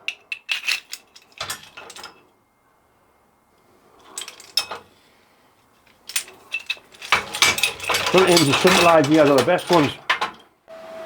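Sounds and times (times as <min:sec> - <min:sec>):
pliers clinking on metal rack: 0:00.0 - 0:02.2, 0:04.1 - 0:04.8, 0:05.9 - 0:10.5.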